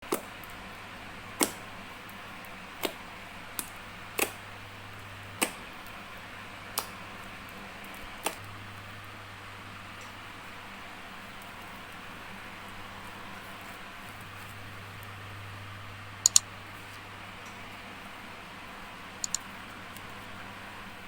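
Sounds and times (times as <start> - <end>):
sharp clicks: 16.3 - 16.5.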